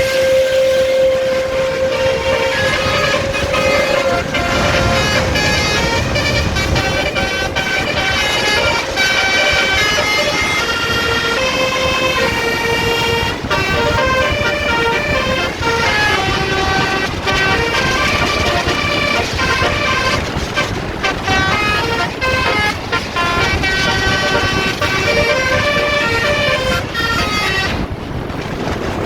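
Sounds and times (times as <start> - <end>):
multi-trumpet air horn playing a tune: 0.0 - 27.9
low rumble: 1.6 - 9.2.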